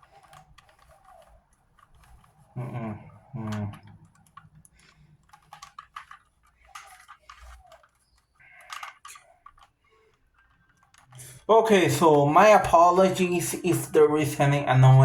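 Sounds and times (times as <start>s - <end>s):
plastic cube twisting clicks: 3.8s - 11.3s.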